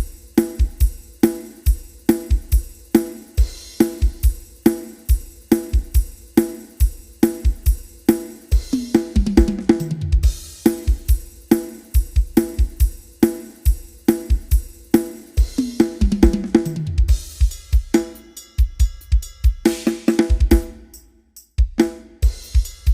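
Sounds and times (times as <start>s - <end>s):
drum kit playing a beat: 0.0s - 22.9s
tom drum fill: 8.5s - 14.6s, 15.4s - 20.8s.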